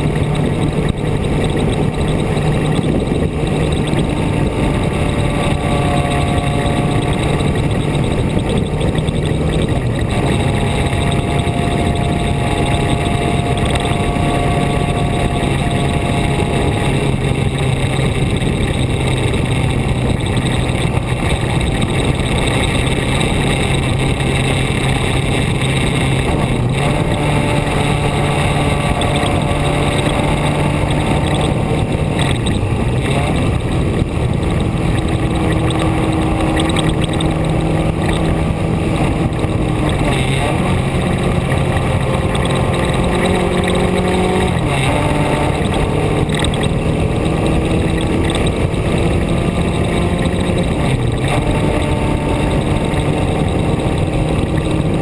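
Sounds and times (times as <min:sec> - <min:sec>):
vehicle engine running: 0:00.0 - 0:55.0
wind and road noise: 0:00.0 - 0:55.0.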